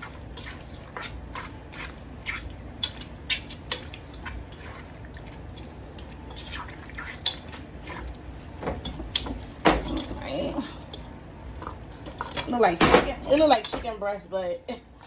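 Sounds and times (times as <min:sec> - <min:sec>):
spoon scraping in a bowl: 0:00.0 - 0:04.9, 0:05.6 - 0:09.0.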